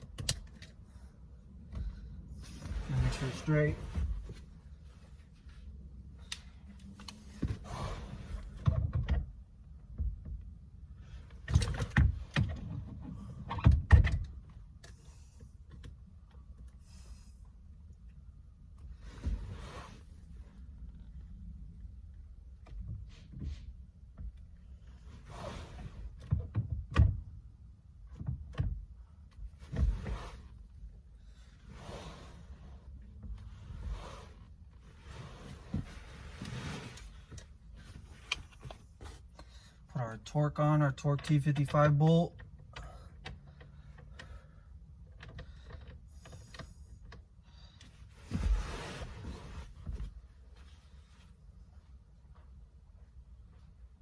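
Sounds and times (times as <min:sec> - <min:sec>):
thump and scraping rush: 0:01.6 - 0:05.7, 0:07.0 - 0:09.2, 0:33.2 - 0:39.4, 0:47.9 - 0:51.3
scraping rustles: 0:02.4 - 0:05.7.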